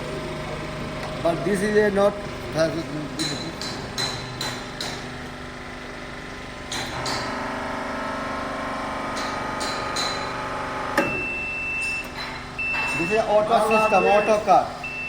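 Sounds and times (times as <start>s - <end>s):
hydraulic pump motor humming: 0.0s - 15.0s
high steady beep: 11.0s - 15.0s.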